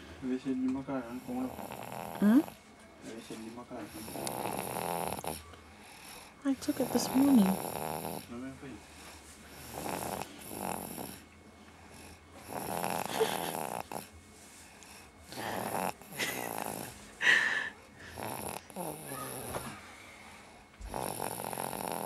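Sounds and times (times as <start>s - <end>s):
baby snoring: 1.1s - 2.6s, 3.8s - 11.3s, 11.9s - 14.1s, 14.9s - 19.8s, 20.4s - 22.0s
baby snorting: 1.1s - 2.6s, 3.9s - 5.4s, 6.8s - 8.3s, 9.5s - 11.2s, 12.5s - 14.1s, 15.0s - 20.0s, 20.9s - 22.0s.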